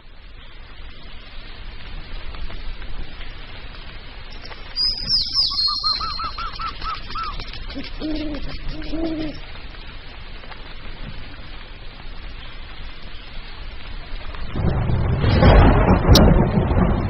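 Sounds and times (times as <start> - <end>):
steady hiss: 0.0 - 17.0
bird whistles and trill: 4.8 - 7.4
owl hoots: 4.8 - 9.4.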